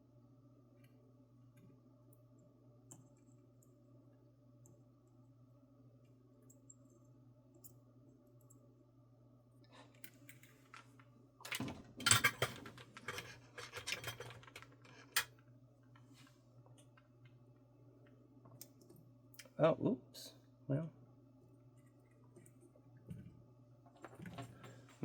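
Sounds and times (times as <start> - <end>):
faint steady hum: 0.0 - 25.0
metal tools clinking and scraping: 12.0 - 15.3.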